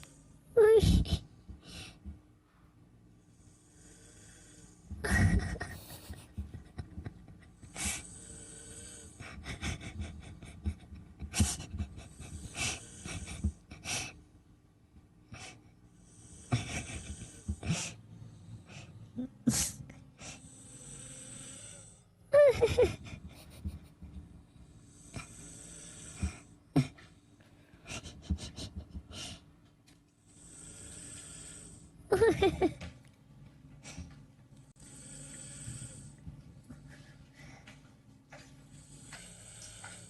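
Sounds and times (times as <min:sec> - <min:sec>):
person snoring: 0:03.3 - 0:06.8, 0:07.5 - 0:10.8, 0:11.4 - 0:13.6, 0:15.4 - 0:22.9, 0:24.7 - 0:27.0, 0:30.3 - 0:32.4, 0:34.8 - 0:36.2, 0:38.8 - 0:40.0
hissing breaths: 0:03.3 - 0:14.2, 0:15.3 - 0:22.2, 0:24.6 - 0:29.5, 0:30.2 - 0:32.0, 0:33.8 - 0:37.8, 0:38.4 - 0:40.0.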